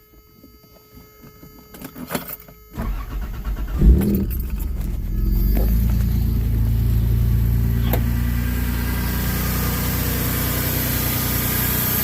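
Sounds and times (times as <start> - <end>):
engine idling: 2.8 - 12.0.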